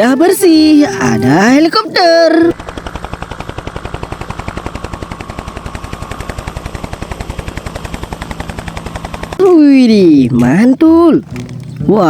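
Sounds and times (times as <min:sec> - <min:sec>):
toy helicopter rattling pulse: 0:02.5 - 0:10.8.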